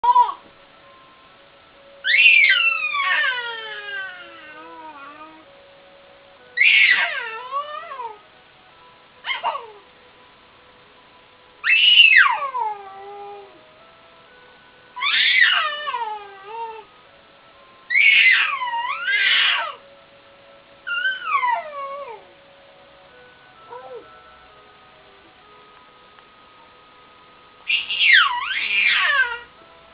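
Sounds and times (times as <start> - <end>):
pet squeaking high cries: 2.0 - 5.2, 6.6 - 8.1, 9.2 - 9.8, 11.6 - 12.7, 15.0 - 16.8, 17.9 - 19.8, 20.9 - 22.2, 27.7 - 29.5.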